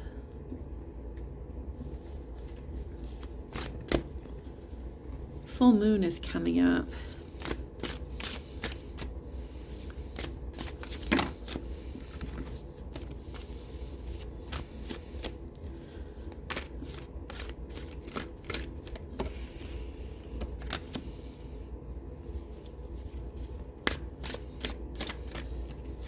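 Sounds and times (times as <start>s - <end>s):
cards being shuffled: 2.0s - 4.8s, 7.1s - 21.1s, 22.4s - 26.0s.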